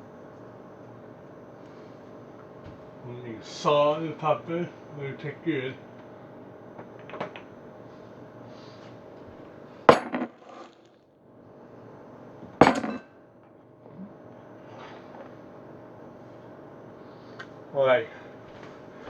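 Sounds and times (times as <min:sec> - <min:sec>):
kitchenware knocking on counter: 0:09.9 - 0:10.4.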